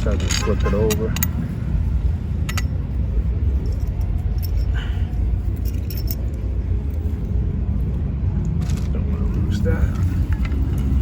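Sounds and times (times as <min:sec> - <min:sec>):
metallic clinks of bolt hardware: 0:00.0 - 0:01.4, 0:02.4 - 0:02.8, 0:03.6 - 0:07.0
steady low rumble: 0:00.0 - 0:11.0.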